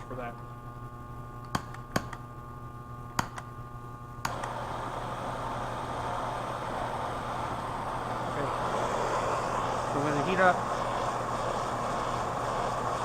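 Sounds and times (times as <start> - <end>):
gas torch flame hissing: 4.2 - 13.0.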